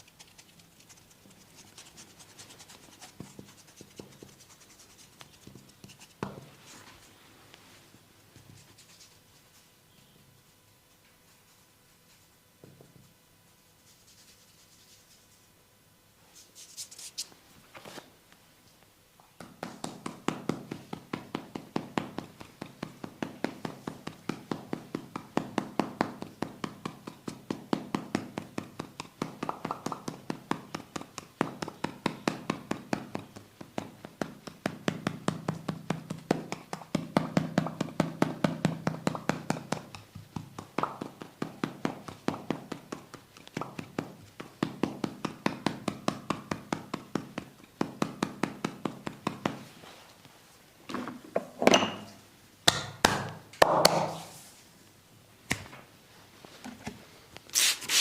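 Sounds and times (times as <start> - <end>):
soft rustle: 0.0 - 9.8
hands slapping in massage: 19.4 - 49.7, 52.7 - 54.3.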